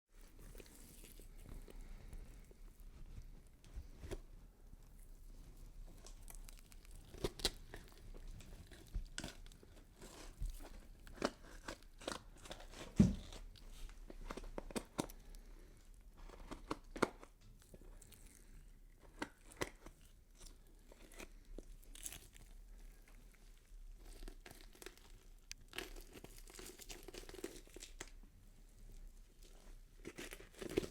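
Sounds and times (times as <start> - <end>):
skin tearing and crackling: 5.9 - 13.7, 19.1 - 23.1, 24.0 - 28.2.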